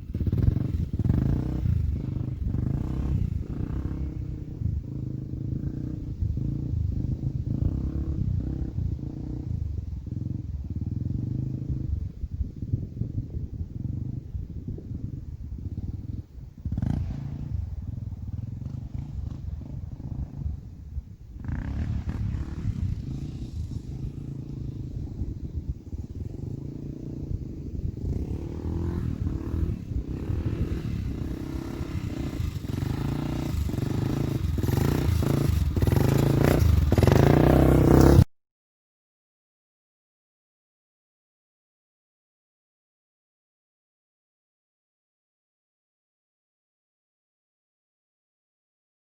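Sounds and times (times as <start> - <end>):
quad engine revving: 0.0 - 10.3, 15.8 - 20.6, 21.4 - 38.3.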